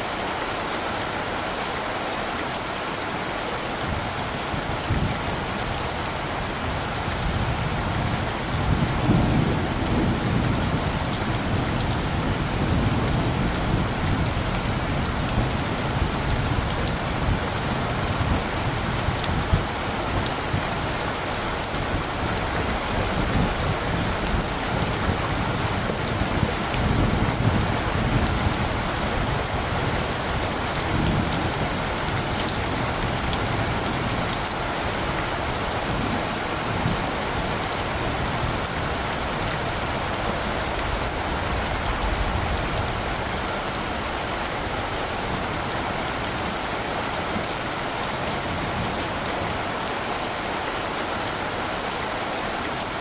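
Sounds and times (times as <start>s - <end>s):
steady rain falling: 0.0s - 53.0s
thunder rumbling: 3.9s - 46.7s.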